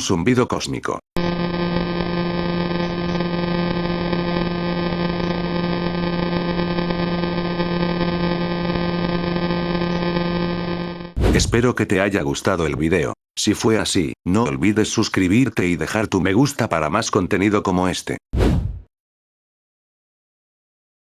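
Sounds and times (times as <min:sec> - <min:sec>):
steady low buzz: 0:01.2 - 0:11.7.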